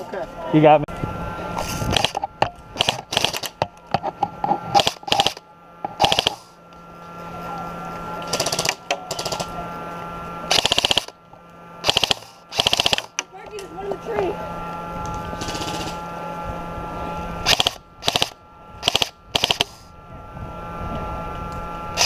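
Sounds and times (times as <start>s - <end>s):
steady low hum: 0.0s - 22.0s
airsoft gun full-auto bursts: 1.9s - 2.2s, 2.8s - 3.6s, 4.8s - 5.4s, 6.0s - 6.5s, 8.3s - 9.5s, 10.5s - 11.2s, 11.8s - 13.2s, 15.4s - 16.0s, 17.5s - 19.8s.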